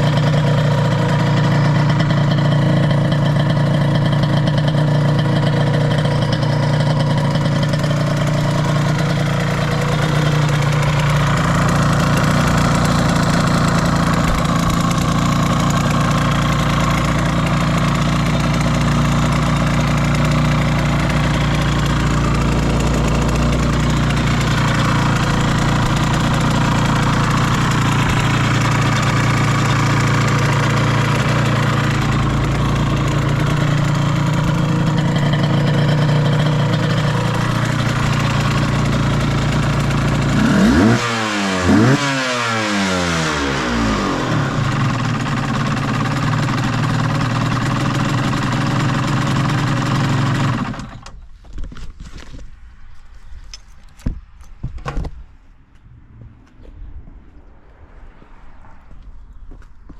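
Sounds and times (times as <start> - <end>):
motorcycle engine idling: 0.0 - 51.3.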